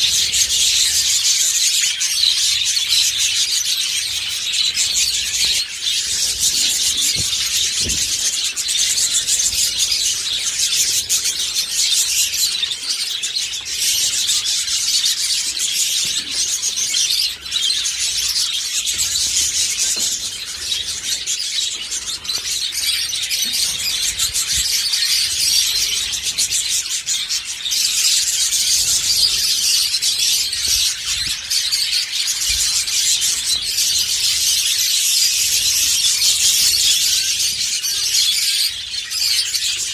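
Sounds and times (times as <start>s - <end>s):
budgerigars chattering: 0.0s - 39.9s.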